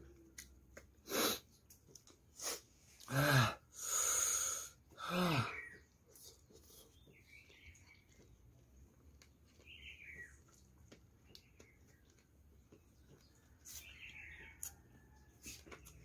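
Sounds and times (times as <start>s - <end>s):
small clicks of eating: 0.0s - 2.3s, 4.8s - 16.0s
faint bird chirps: 9.5s - 10.6s.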